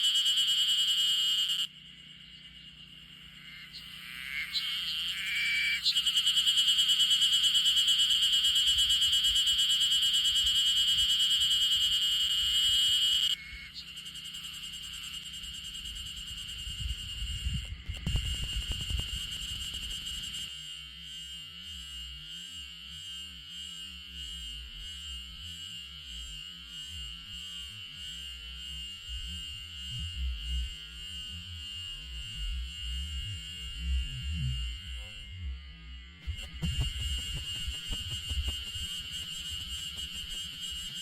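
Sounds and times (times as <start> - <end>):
cicada buzzing: 0.0 - 20.6, 36.2 - 41.0.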